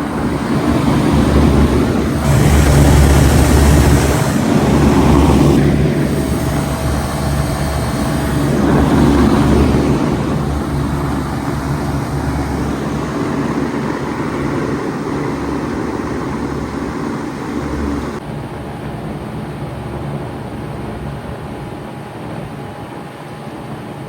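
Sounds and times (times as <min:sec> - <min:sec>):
fans rushing: 0:00.0 - 0:18.2
compressor hum: 0:00.0 - 0:18.3.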